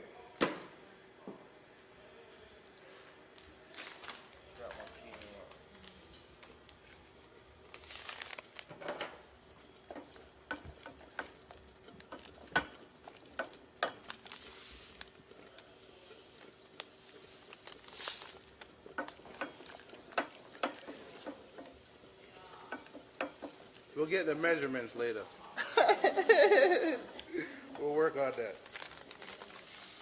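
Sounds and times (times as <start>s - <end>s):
faint steady hum: 0.0s - 30.0s
utensils and cookware clicking: 9.8s - 14.3s, 18.2s - 23.9s.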